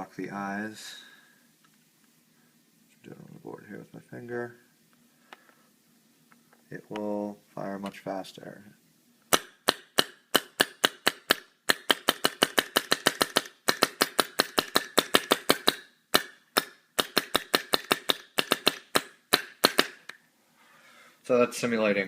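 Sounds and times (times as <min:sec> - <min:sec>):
paintball marker rapid clicking: 0:09.3 - 0:20.0.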